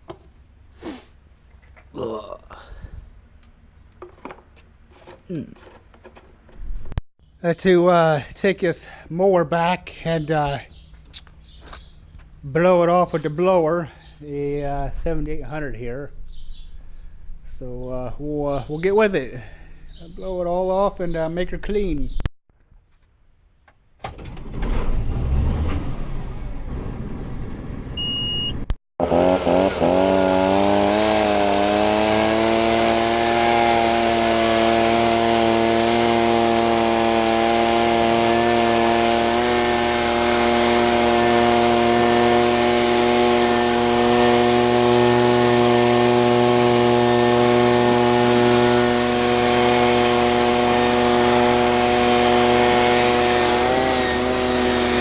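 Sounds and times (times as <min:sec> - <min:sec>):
leaf blower engine: 0:00.0 - 0:03.0, 0:29.0 - 0:55.0.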